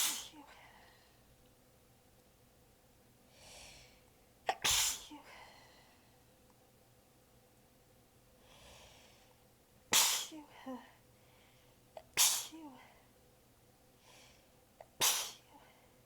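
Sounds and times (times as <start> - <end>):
person sneezing: 0.0 - 0.6, 4.5 - 5.3, 10.0 - 10.9, 12.0 - 12.8, 14.9 - 15.5.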